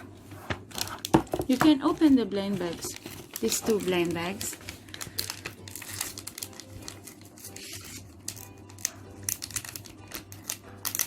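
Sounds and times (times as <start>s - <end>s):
packets crinkled and torn open: 2.7s - 11.0s.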